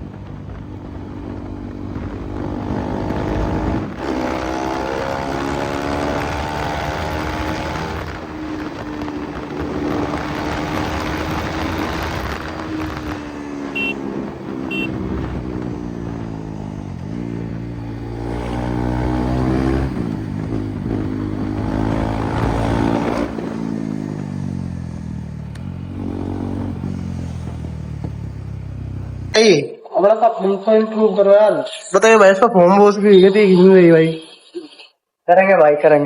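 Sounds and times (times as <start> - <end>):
motorcycle engine accelerating: 0.0 - 29.4
short high beeps: 13.7 - 14.1, 14.7 - 15.0.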